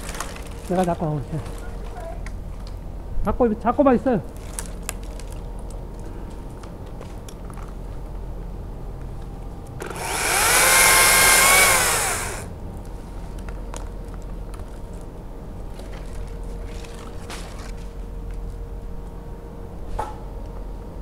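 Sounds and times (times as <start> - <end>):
battery chainsaw motor whine: 9.8 - 12.5.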